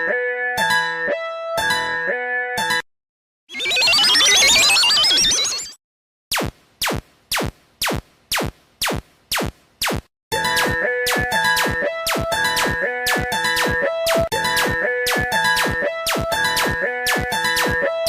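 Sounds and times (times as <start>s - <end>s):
synth tune with drum machine: 10.4s - 18.0s.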